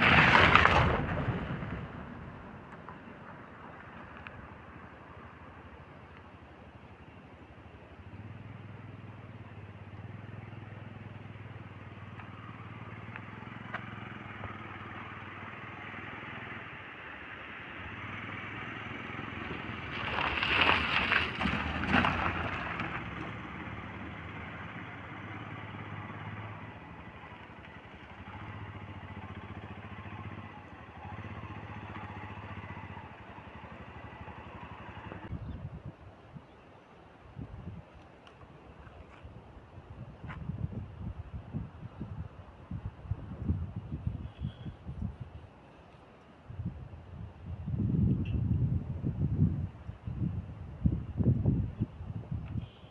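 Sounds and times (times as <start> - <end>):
rough vehicle passing: 0.0 - 6.0, 8.0 - 35.4
vehicle engine running: 0.0 - 35.6
road noise: 0.0 - 52.9.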